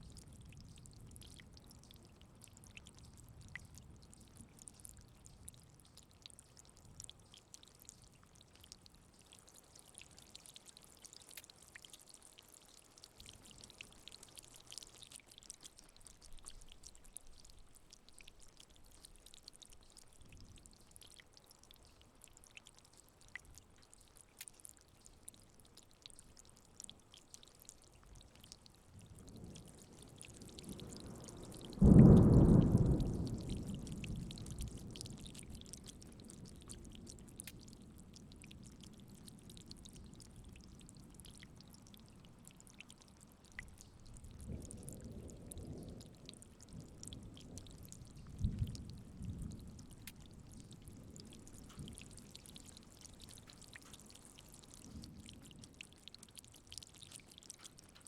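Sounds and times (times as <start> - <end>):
steady rain: 0.0 - 58.0
thunder clap and rumbles: 31.7 - 34.9.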